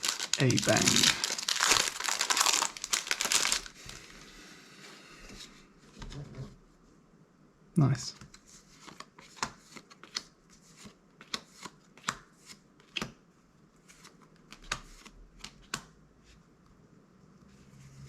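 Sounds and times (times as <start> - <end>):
trading cards flipped by hand: 8.3 - 13.2.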